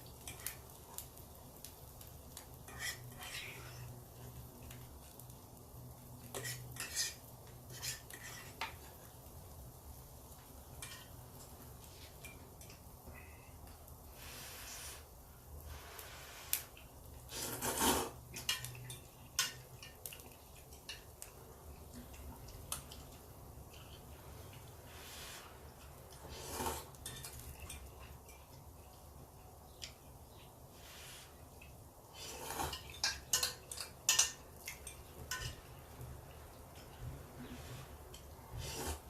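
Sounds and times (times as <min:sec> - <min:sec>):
cutlery clinking and scraping on plate: 0:02.6 - 0:03.6, 0:06.2 - 0:09.0, 0:10.7 - 0:11.2, 0:17.4 - 0:21.1, 0:26.2 - 0:28.6, 0:32.2 - 0:35.7.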